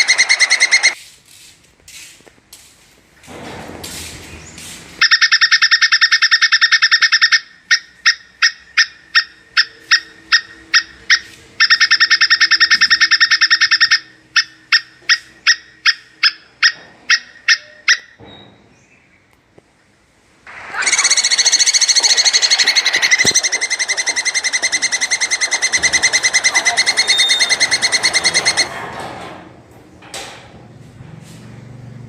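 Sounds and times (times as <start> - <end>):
squirrel chattering trill: 0.0 - 1.0, 5.0 - 18.2, 20.8 - 28.7.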